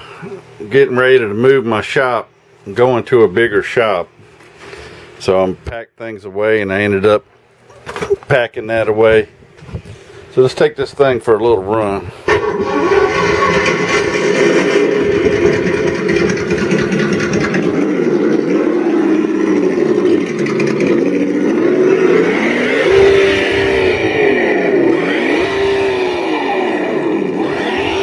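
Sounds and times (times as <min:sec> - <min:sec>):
simulated engine sound revving: 0:12.3 - 0:28.0.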